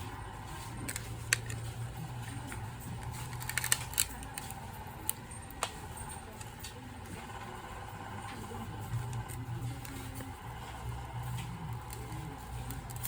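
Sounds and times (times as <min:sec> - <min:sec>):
steady low hum: 0:00.0 - 0:13.0
small tools clicking and tapping: 0:00.8 - 0:07.2.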